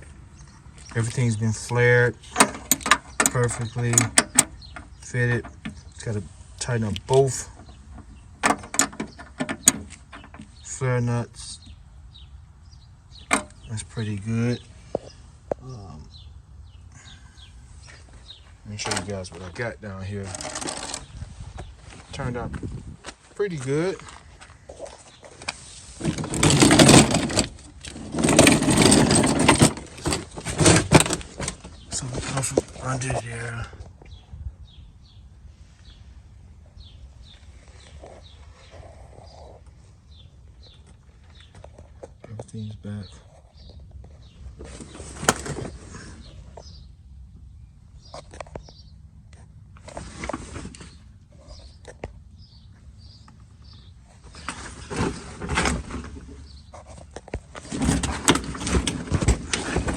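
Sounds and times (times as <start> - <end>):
handling clicks and knocks: 2.3 - 6.0, 6.9 - 10.6, 13.2 - 13.7, 18.8 - 19.5, 20.2 - 21.1, 24.9 - 32.7, 56.8 - 59.9
scraping and shuffling on ground: 17.7 - 33.8, 37.1 - 46.8, 48.0 - 59.9.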